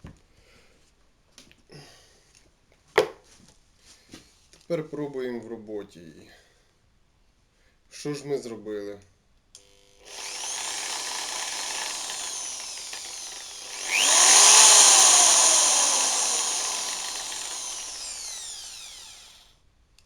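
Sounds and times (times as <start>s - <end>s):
electric drill motor whining: 9.6s - 19.4s
drill switch click: 10.1s - 19.4s.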